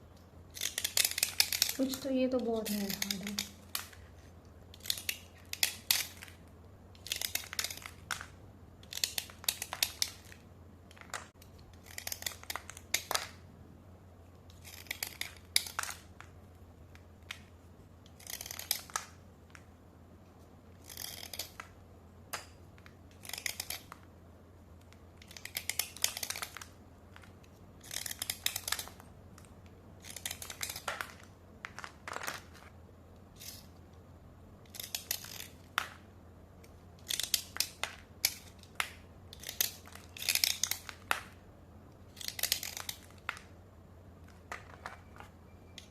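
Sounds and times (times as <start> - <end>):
slate pencil scraping: 18.1 - 18.8.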